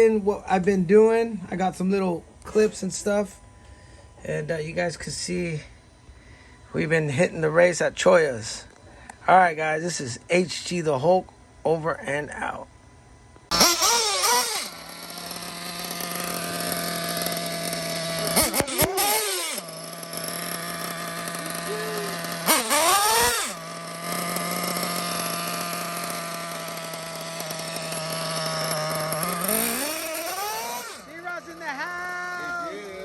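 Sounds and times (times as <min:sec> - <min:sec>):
small rc car engine revving: 0:13.5 - 0:33.0.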